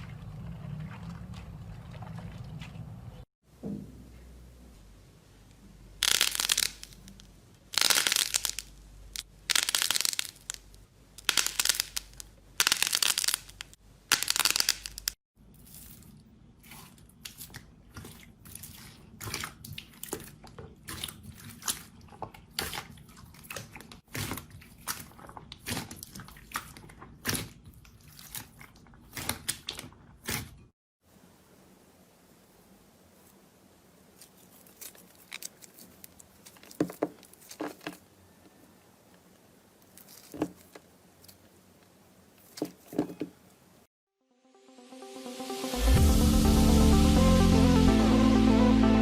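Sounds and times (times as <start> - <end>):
crunchy slime squeezed: 6.0 - 7.1, 7.7 - 8.7, 9.5 - 10.6.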